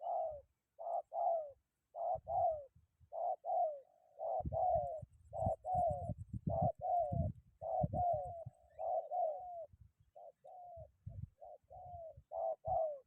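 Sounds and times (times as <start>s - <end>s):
dove cooing: 0.0s - 13.0s
wind buffeting microphone: 4.4s - 8.6s, 10.8s - 12.2s.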